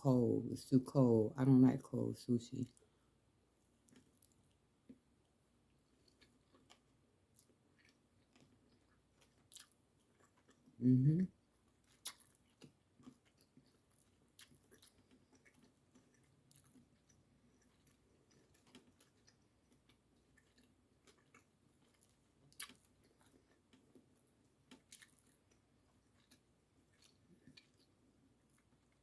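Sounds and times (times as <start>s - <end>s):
faint chewing mouth clicks: 5.9s - 10.8s, 11.7s - 29.0s.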